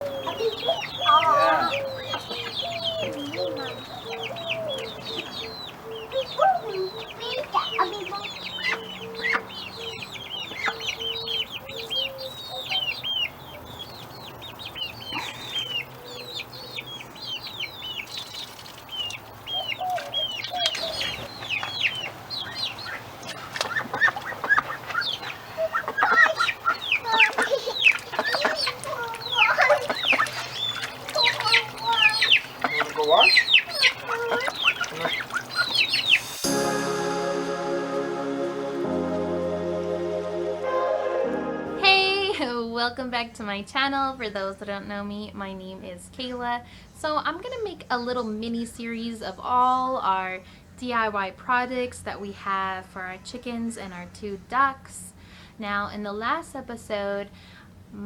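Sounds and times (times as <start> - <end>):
chickens clucking: 0.0 - 13.4, 19.1 - 36.5.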